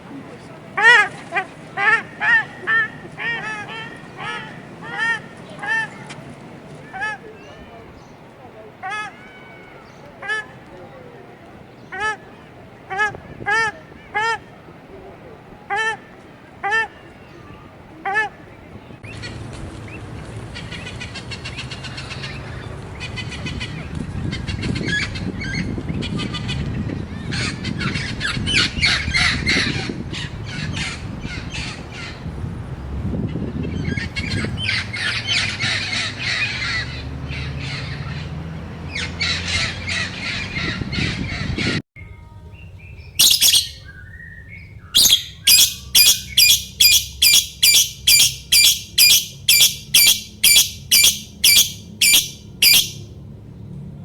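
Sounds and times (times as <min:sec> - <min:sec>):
birds chirping and calling: 0:43.0 - 0:44.1, 0:44.8 - 0:53.0
bird repeating sharp high call: 0:43.2 - 0:44.0, 0:45.0 - 0:53.0.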